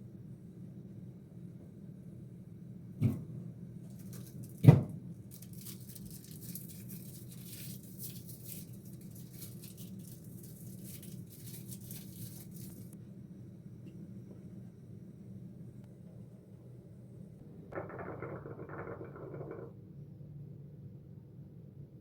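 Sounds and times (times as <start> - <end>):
sharp knocks: 17.7 - 19.7.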